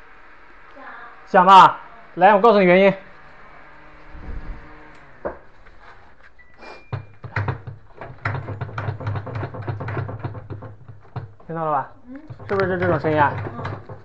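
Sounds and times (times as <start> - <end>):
rattling knocks: 6.9 - 14.0
washing machine spin hum: 6.9 - 14.0.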